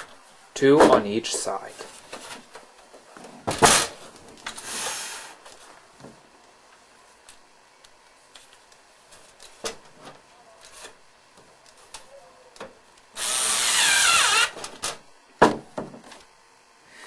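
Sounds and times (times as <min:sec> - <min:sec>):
power screwdriver whining: 0:13.2 - 0:14.6.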